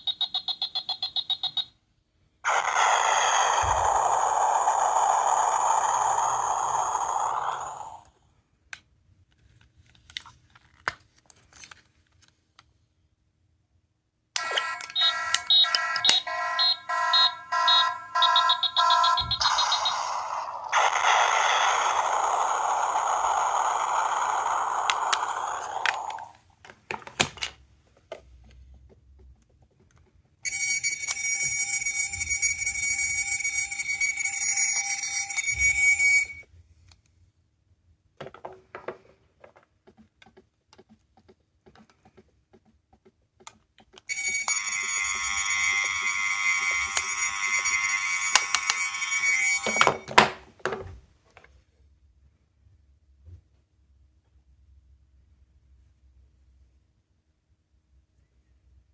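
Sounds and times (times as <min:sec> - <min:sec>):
electronic ringing tones: 0:14.4 - 0:21.2, 0:44.1 - 0:50.1
hissy electronic sound: 0:14.5 - 0:26.2.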